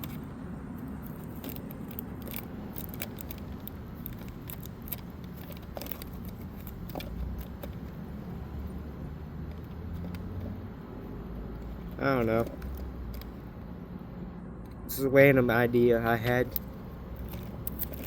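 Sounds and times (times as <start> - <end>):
small objects clicking and scraping: 0.0 - 10.7, 11.5 - 13.4, 16.4 - 18.0.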